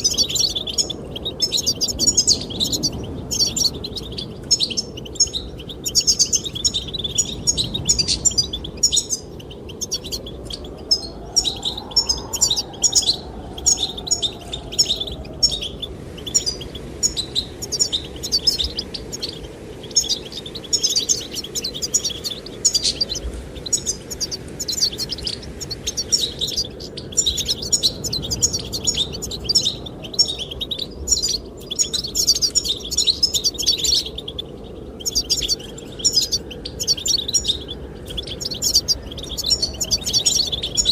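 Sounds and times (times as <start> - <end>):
finches twittering: 0.0 - 40.9
wind rushing: 5.8 - 31.6.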